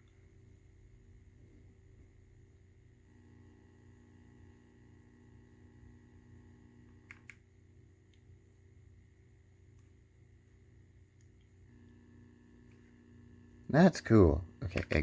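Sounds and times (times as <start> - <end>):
faint television electrical hum: 0.0 - 15.0
low buzzing tone: 0.0 - 15.0
quick clicks: 7.0 - 7.4.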